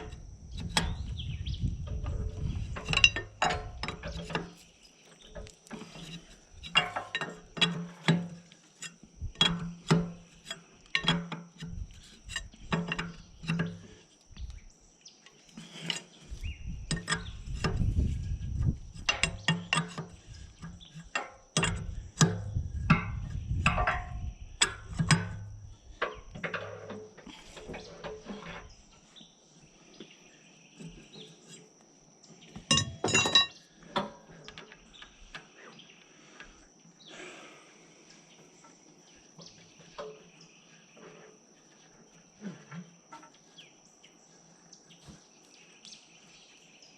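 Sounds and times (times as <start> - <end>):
metal clinks and knocks: 1.8 - 13.9, 16.8 - 28.8, 32.5 - 35.4.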